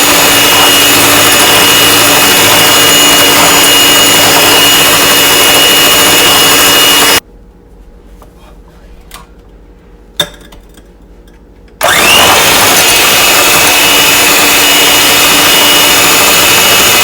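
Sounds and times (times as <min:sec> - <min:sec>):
electric mixer whining: 0:00.0 - 0:07.2, 0:11.8 - 0:17.0.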